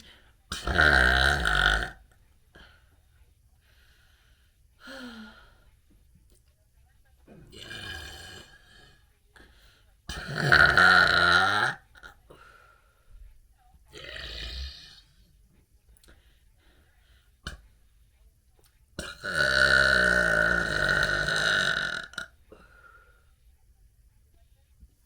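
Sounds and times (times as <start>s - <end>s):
person burping: 0.5s - 2.0s, 7.3s - 8.6s, 10.1s - 12.2s, 14.0s - 15.0s, 19.0s - 22.3s.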